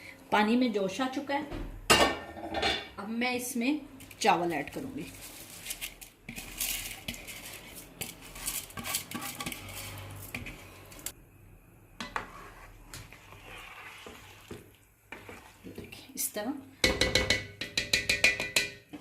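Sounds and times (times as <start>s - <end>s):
utensils clinking on metal pot: 5.7s - 11.1s, 16.8s - 19.0s
water boiling: 12.1s - 16.8s.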